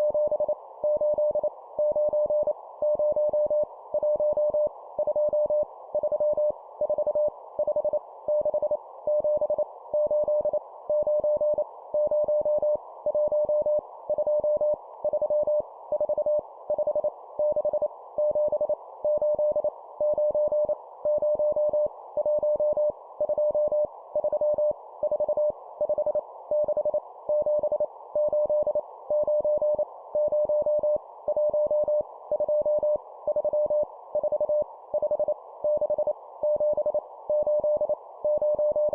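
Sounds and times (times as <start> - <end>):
morse code beeps: 8.4 - 38.9.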